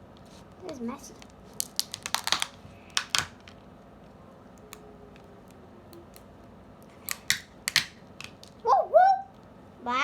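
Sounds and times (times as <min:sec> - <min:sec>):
small craft pieces ticking: 0:01.6 - 0:03.3.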